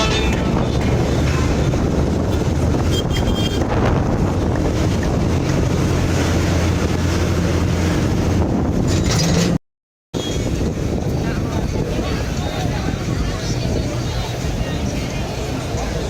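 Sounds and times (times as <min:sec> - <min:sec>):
wind on microphone: 0:00.0 - 0:09.6, 0:10.2 - 0:16.0.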